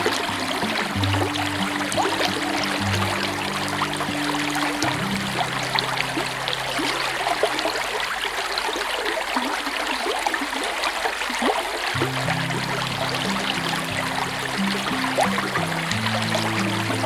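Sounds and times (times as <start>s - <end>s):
river water trickling and gurgling: 0.0s - 17.0s.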